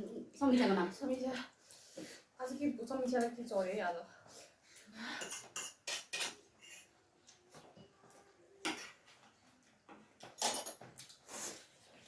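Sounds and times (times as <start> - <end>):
cutlery and plates clinking: 5.1 - 7.0, 7.6 - 11.4.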